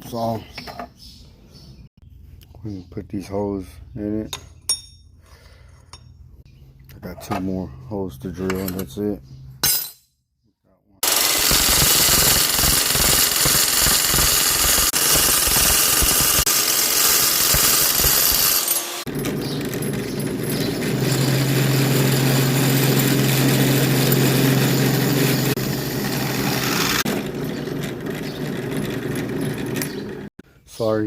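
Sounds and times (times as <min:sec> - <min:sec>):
electric drill grinding through steel: 0:11.0 - 0:30.4
motor hum: 0:11.0 - 0:30.4.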